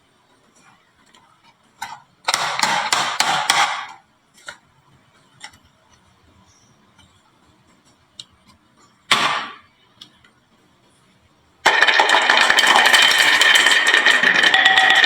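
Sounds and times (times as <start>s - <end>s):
marbles clattering on wooden run: 11.7s - 15.0s.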